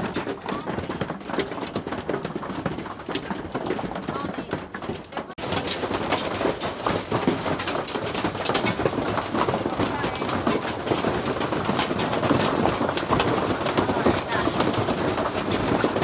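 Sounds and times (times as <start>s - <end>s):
hail hammering on metal: 0.0s - 16.0s.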